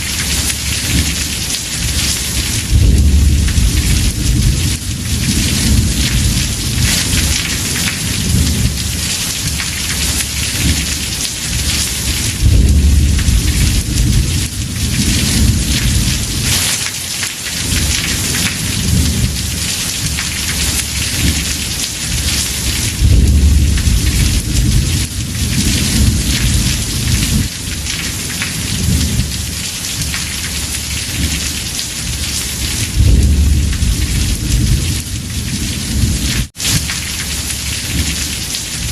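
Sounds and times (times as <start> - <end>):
thunder rumbling: 0.0 - 16.9, 17.5 - 30.3, 30.9 - 37.0
heavy rain on a roof: 0.0 - 38.9.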